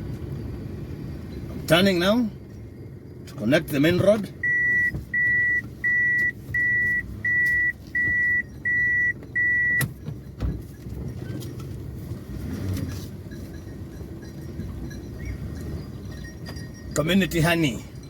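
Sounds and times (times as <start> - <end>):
car engine running: 0.0 - 18.0
road noise: 0.0 - 18.0
car warning beep: 3.7 - 11.8.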